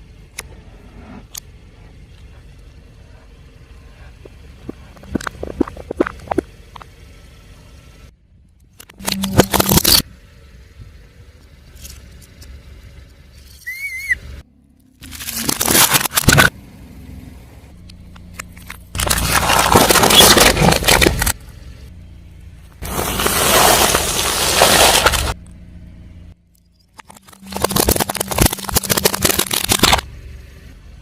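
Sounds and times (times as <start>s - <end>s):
short warbling squeak: 13.4s - 14.4s
tyre crushing crunchy objects: 15.0s - 16.5s, 18.9s - 21.4s, 22.8s - 25.4s, 27.0s - 30.0s.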